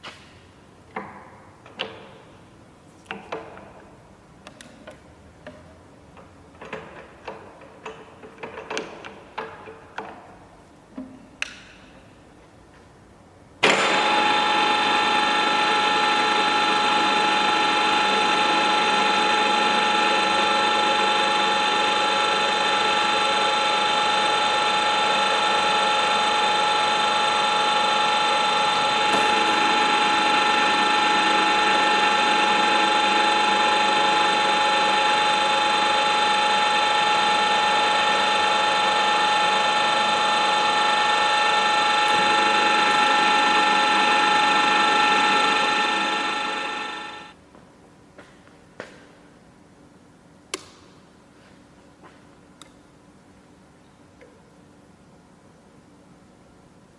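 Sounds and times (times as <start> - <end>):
pillar drill running: 13.6 - 47.4.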